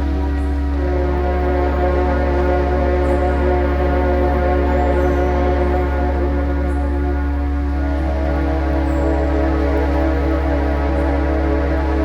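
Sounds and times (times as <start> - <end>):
ambient drone music: 0.0 - 12.0.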